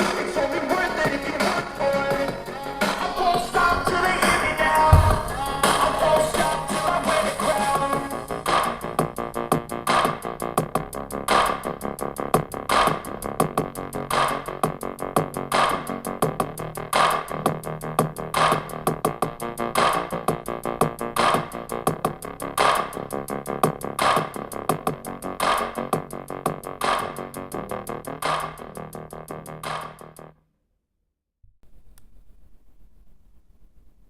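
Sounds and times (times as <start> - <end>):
hip-hop beat with synth keyboard: 1.1 - 9.2.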